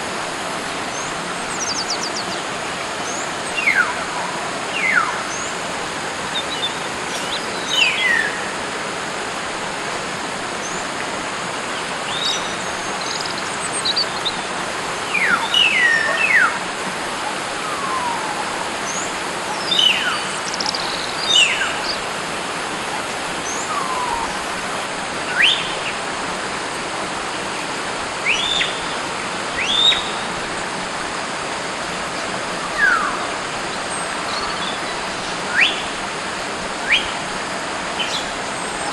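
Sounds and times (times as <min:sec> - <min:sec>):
steady hiss: 0:00.0 - 0:38.9
birds whistling calls: 0:15.1 - 0:16.6, 0:17.2 - 0:22.0, 0:23.4 - 0:24.5, 0:25.3 - 0:26.0, 0:28.2 - 0:29.0, 0:29.6 - 0:30.3, 0:32.6 - 0:33.4, 0:34.0 - 0:35.9, 0:36.8 - 0:37.2.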